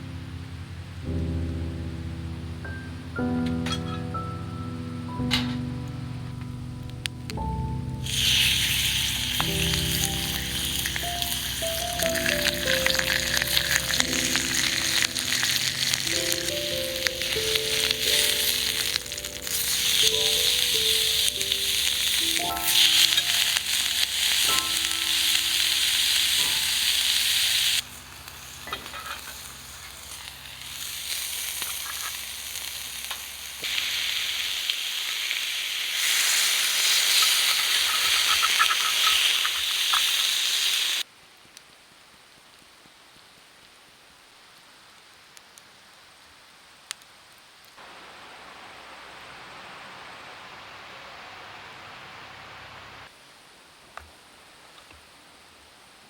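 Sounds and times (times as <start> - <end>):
faint hiss: 0.0 - 56.0
food sizzling in a pan: 7.8 - 41.1.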